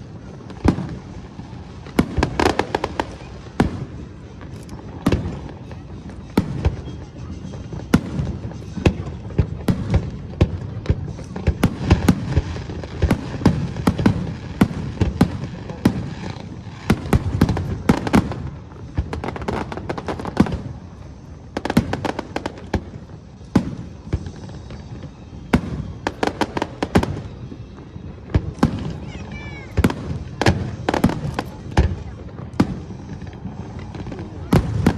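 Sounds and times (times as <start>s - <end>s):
fireworks bangs and crackles: 0.0s - 34.9s.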